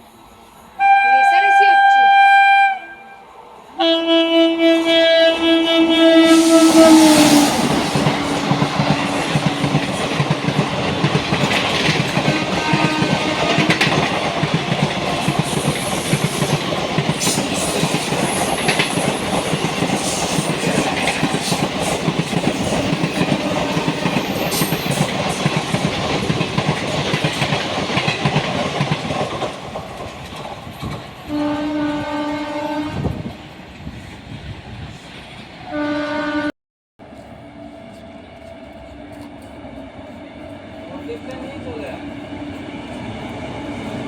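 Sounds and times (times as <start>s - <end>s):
train passing at speed: 0.0s - 44.0s
train horn: 0.8s - 8.4s, 12.2s - 14.0s, 31.3s - 33.3s, 35.7s - 36.5s
wheels clicking over rail joints: 8.0s - 31.3s.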